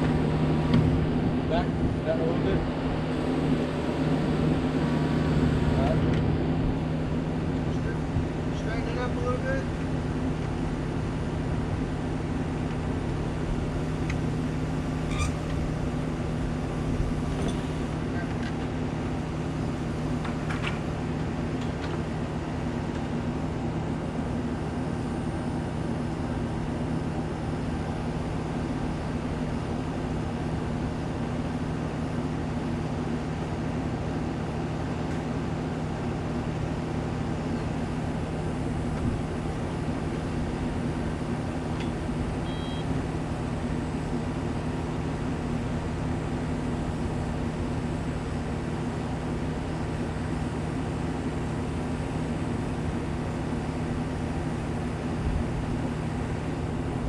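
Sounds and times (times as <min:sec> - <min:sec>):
construction equipment engine droning: 0:00.0 - 0:57.0.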